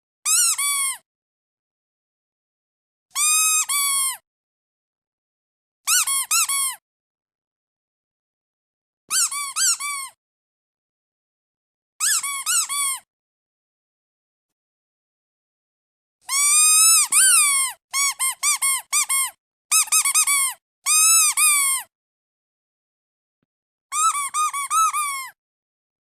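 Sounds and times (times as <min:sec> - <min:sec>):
squeaky duck toy squeaks: 0:00.3 - 0:01.0, 0:03.2 - 0:04.2, 0:05.9 - 0:06.8, 0:09.1 - 0:10.2, 0:12.0 - 0:13.1, 0:16.3 - 0:21.9, 0:23.9 - 0:25.4.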